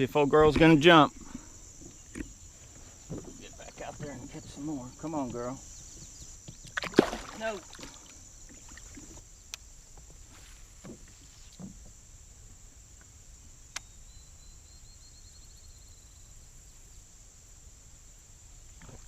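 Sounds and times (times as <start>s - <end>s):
high insect drone: 0.0s - 19.0s.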